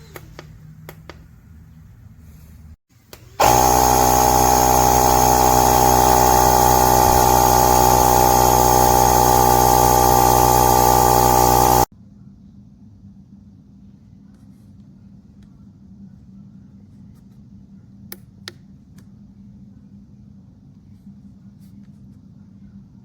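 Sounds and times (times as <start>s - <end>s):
air compressor running: 3.2s - 11.9s.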